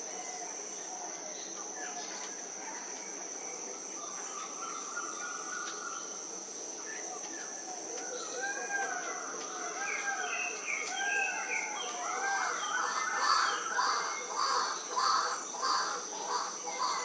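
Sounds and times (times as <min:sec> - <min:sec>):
insects chirring: 0:00.0 - 0:17.0.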